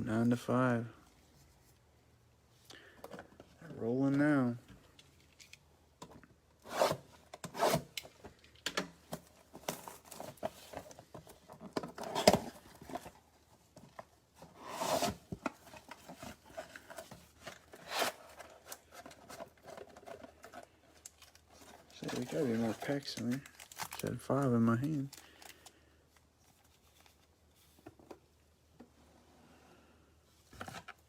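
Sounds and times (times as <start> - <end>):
cardboard and wrappers rustling: 9.0 - 28.2
foil packs ripping: 21.3 - 25.6.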